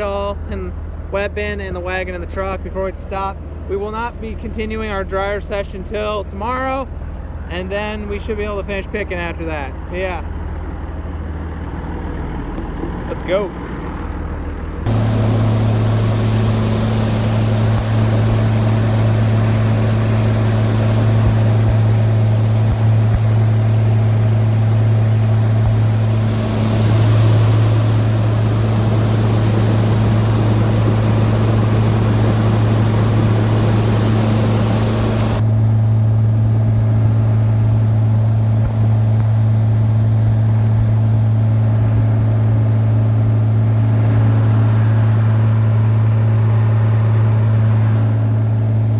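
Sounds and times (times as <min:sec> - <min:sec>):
farm vehicle engine running: 0:13.8 - 0:48.9.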